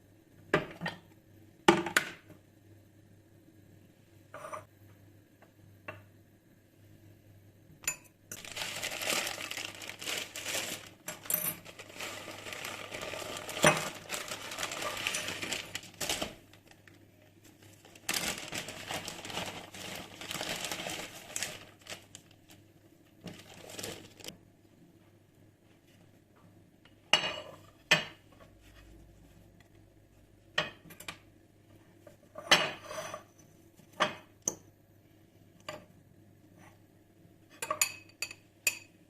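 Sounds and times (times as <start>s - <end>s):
utensils clinking on dishes: 11.0s - 15.6s.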